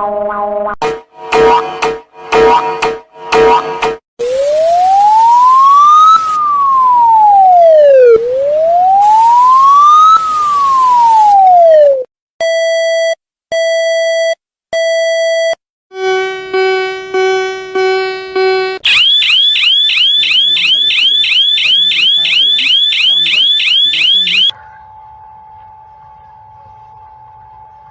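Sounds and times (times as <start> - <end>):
electronic siren wailing: 4.2 - 12.1, 16.0 - 24.6
long steady beeps: 16.0 - 24.5.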